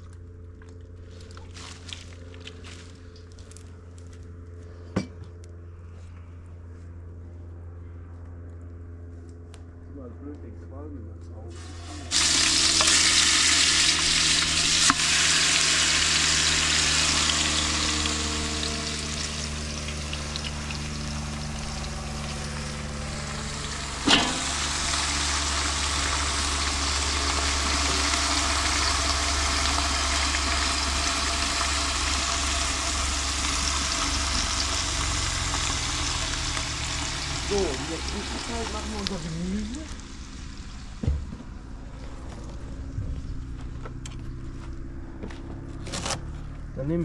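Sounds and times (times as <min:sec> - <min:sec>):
meat sizzling in a pan: 0:11.6 - 0:40.9.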